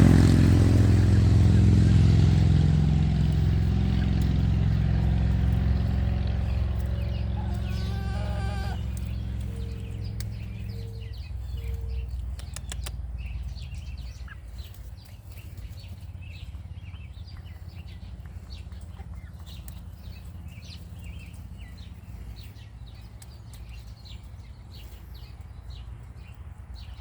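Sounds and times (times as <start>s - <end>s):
birds chirping: 0.0s - 27.0s
steady low rumble: 0.0s - 27.0s
sharp clicks: 12.1s - 13.4s.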